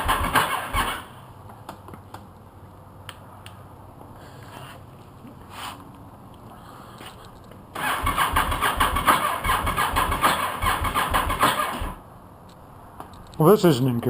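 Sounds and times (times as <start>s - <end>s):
motorcycle starter cranking engine: 0.0s - 1.1s, 7.8s - 12.0s.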